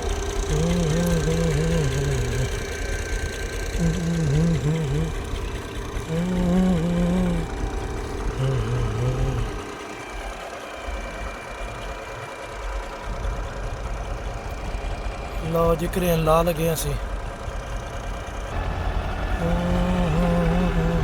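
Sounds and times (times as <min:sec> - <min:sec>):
diesel engine idling: 0:00.0 - 0:21.0.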